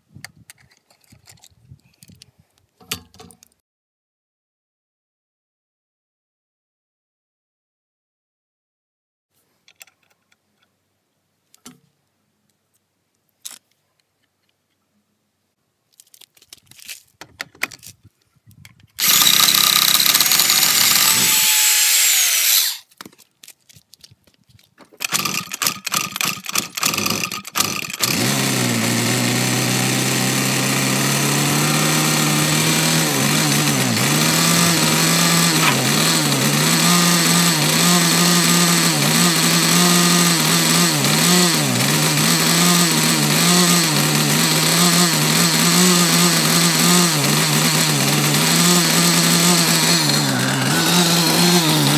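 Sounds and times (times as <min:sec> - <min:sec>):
clicking and rattling: 0:00.5 - 0:03.6, 0:09.6 - 0:10.7, 0:16.0 - 0:21.3, 0:22.9 - 0:28.1
loud burst of noise: 0:19.0 - 0:22.8
small motor running: 0:19.0 - 0:22.8, 0:25.0 - 0:51.9.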